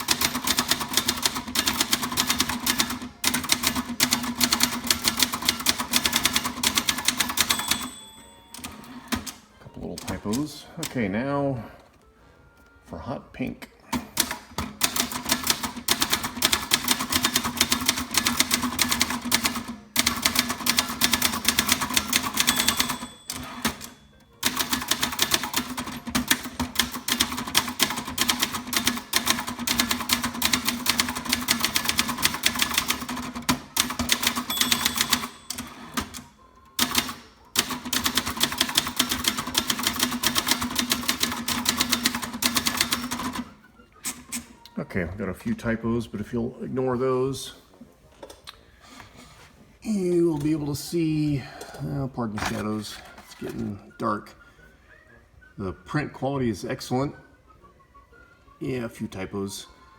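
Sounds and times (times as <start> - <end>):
typewriter typing: 0.0 - 9.4, 13.9 - 43.5.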